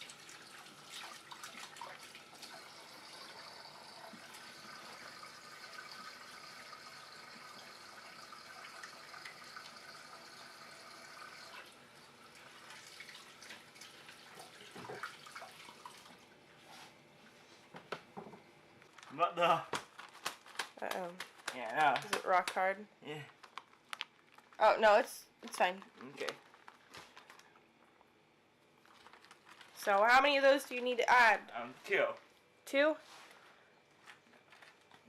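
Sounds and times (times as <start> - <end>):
water running from tap: 0.0 - 16.2.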